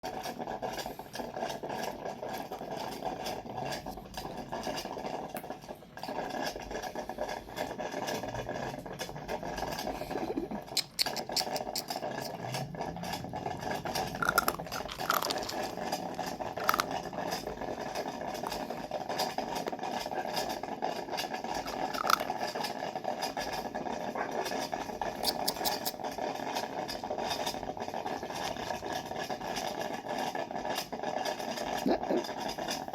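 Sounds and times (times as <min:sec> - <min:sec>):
coffee maker humming: 0:00.1 - 0:10.6, 0:11.7 - 0:25.3.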